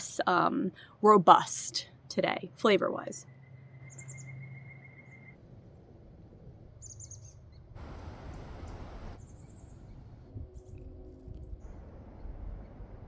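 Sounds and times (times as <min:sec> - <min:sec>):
small bird chirping trills: 0:03.2 - 0:05.4, 0:06.8 - 0:07.7
wind rumble: 0:05.1 - 0:13.0.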